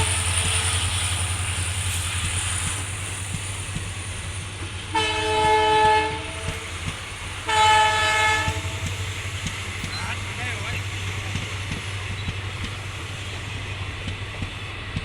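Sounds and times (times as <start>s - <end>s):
locomotive engine rumble: 0.0s - 15.0s
locomotive horn blasts: 4.9s - 6.6s, 7.5s - 8.9s.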